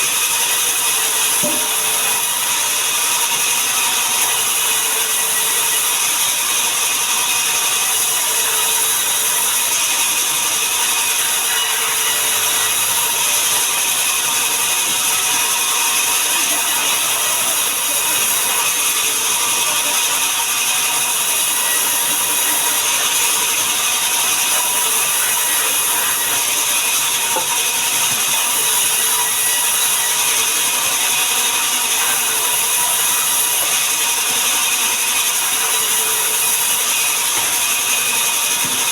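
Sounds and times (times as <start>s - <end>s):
sawmill machinery running: 0.0s - 38.9s.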